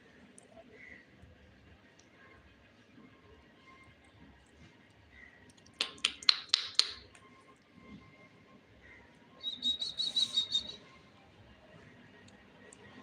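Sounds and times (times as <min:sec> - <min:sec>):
high parrot chirps: 0:09.4 - 0:10.8
parrot calling: 0:09.4 - 0:10.8.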